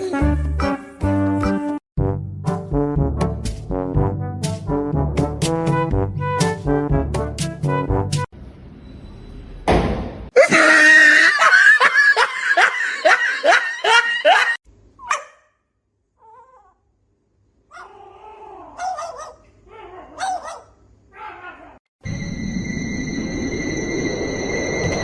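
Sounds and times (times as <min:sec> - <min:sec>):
person crying out or laughing: 0:10.4 - 0:14.5.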